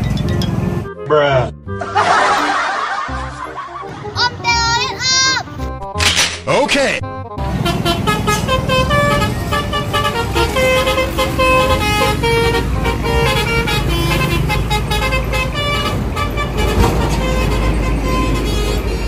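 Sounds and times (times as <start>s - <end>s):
bus engine running: 0.0s - 5.8s, 7.1s - 19.0s
bus horn playing a quick tune: 7.4s - 19.0s.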